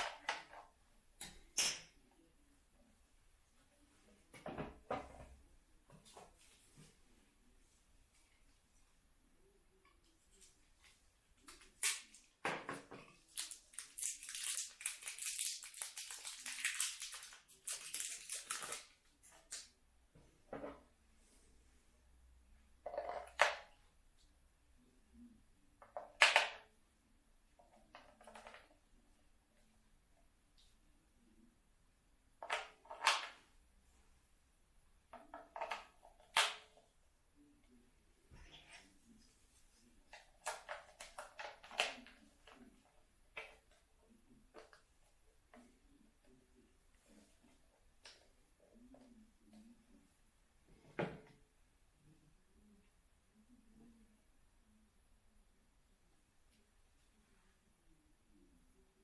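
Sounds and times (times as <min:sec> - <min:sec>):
small objects rustling and clicking: 0:13.0 - 0:19.7
packaging crinkling: 0:13.3 - 0:18.9.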